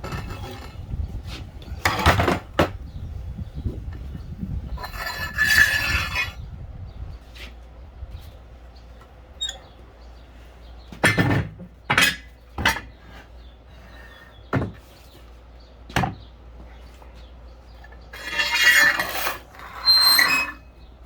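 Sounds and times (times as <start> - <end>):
circular saw squealing: 4.8 - 6.4, 18.2 - 20.9.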